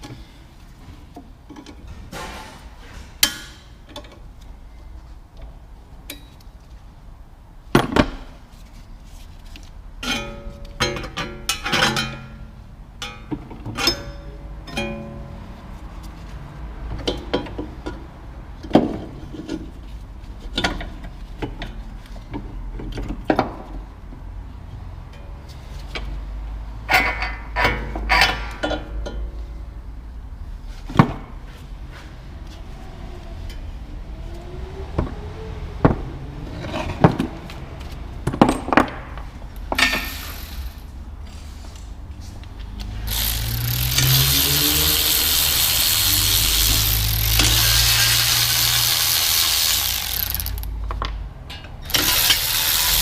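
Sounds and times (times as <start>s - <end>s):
metal tools clinking: 39.8s - 40.9s.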